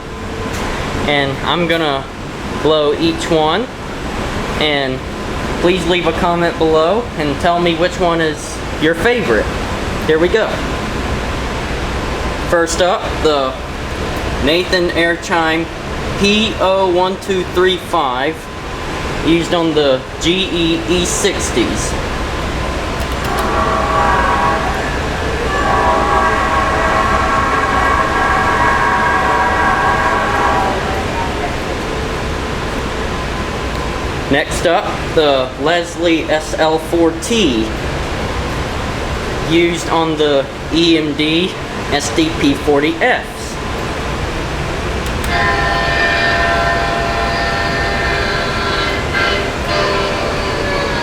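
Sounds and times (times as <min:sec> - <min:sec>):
air horn chord blasts: 0:23.0 - 0:32.7, 0:45.2 - 0:51.0.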